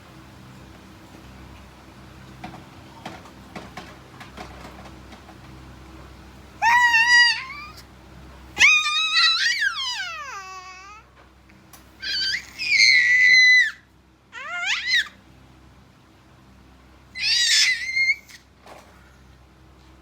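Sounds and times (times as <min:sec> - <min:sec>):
baby shrieking happily: 0:06.6 - 0:07.8, 0:08.6 - 0:11.1, 0:12.0 - 0:15.2, 0:17.2 - 0:18.5.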